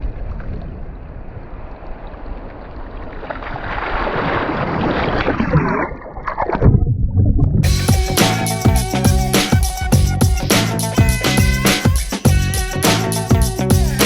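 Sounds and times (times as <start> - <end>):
boat engine rumble: 7.6 - 14.0.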